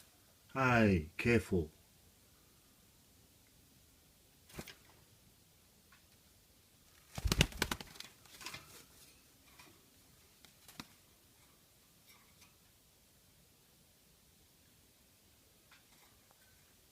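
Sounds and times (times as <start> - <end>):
dove wings flapping: 4.5 - 5.0, 6.9 - 8.9, 10.4 - 11.0.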